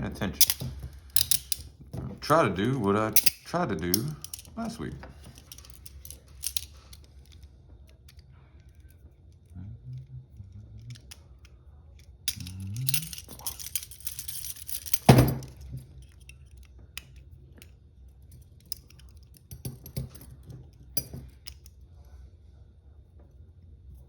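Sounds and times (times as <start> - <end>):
handcuff chains rattling: 0.2 - 7.4, 12.2 - 16.6, 18.3 - 21.7.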